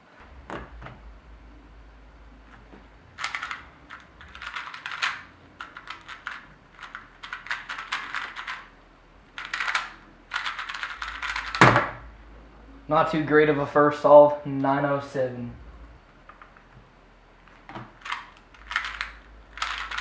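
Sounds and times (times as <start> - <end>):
puzzle cube plastic clicking: 2.5 - 11.8, 17.5 - 20.0.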